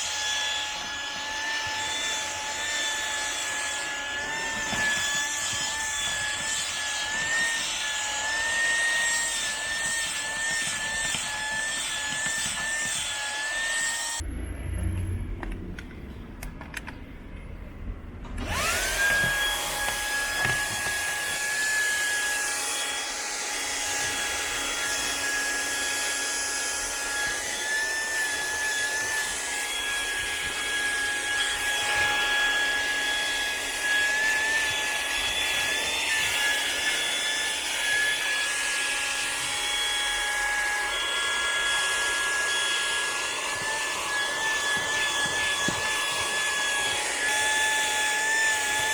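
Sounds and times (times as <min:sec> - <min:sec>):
car vacuum cleaner motor whine: 0:18.4 - 0:48.9.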